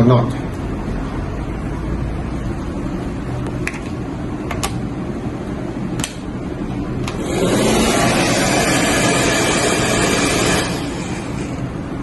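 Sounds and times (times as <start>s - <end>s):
hair dryer whirring: 7.0s - 11.6s.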